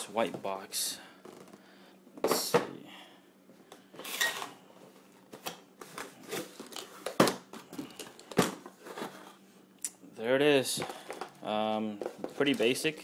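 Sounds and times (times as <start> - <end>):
cardboard packaging rustling: 12.0 - 13.0.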